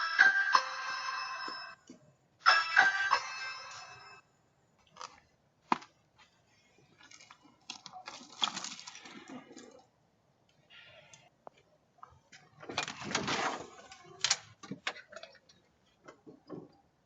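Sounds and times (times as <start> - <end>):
doorbell chime: 0.0 - 1.8, 2.5 - 4.2.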